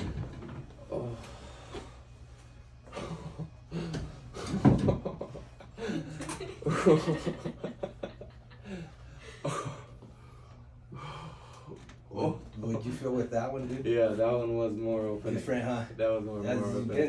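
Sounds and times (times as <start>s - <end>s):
person chuckling: 2.9s - 10.0s
person breathing: 8.6s - 11.9s.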